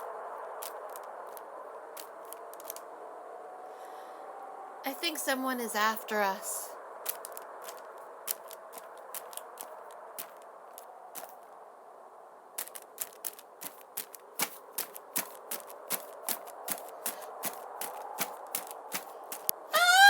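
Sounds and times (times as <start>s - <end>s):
footsteps crunching on dry ground: 7.1s - 11.4s, 12.6s - 19.5s.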